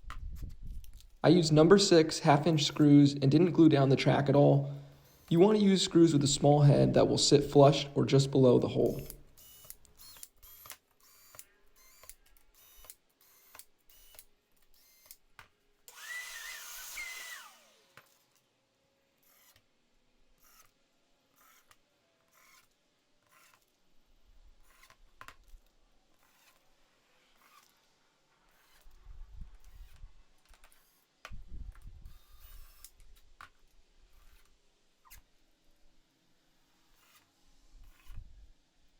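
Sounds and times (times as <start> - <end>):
cordless drill whining: 4.7 - 5.5, 8.8 - 15.2, 15.9 - 18.4, 19.2 - 19.7, 20.4 - 23.7, 26.2 - 26.7, 27.3 - 27.8, 28.5 - 33.2, 36.9 - 38.4.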